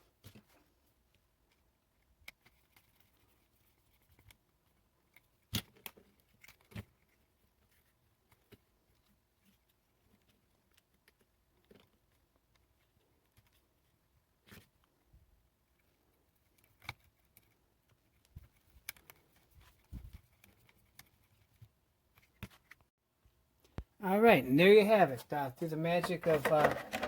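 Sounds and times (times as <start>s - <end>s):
small plastic parts clicking: 15.7s - 22.8s, 26.0s - 27.0s.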